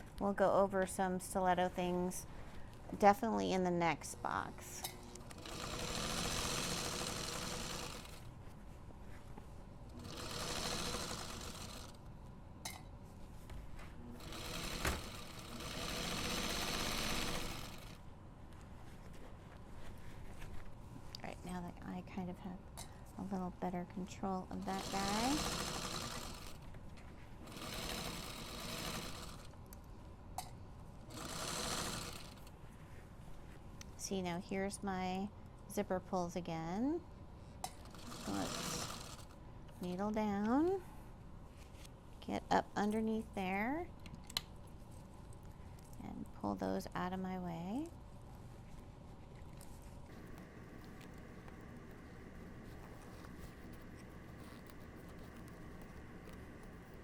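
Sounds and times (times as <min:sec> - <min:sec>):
sewing machine stitching: 0:05.2 - 0:08.3, 0:10.0 - 0:12.0, 0:14.2 - 0:18.0, 0:24.5 - 0:26.6, 0:27.4 - 0:29.5, 0:31.1 - 0:32.5, 0:37.8 - 0:39.4.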